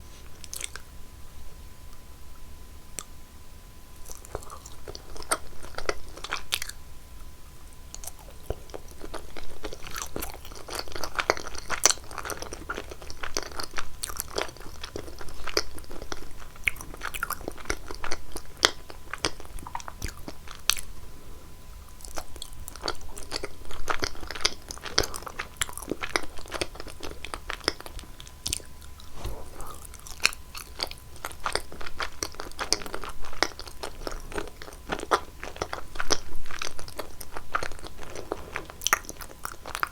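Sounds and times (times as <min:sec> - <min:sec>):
crackly crunches: 0:07.9 - 0:21.0, 0:21.9 - 0:39.9
crisp bites and wet chewing: 0:07.9 - 0:21.0, 0:22.0 - 0:39.9.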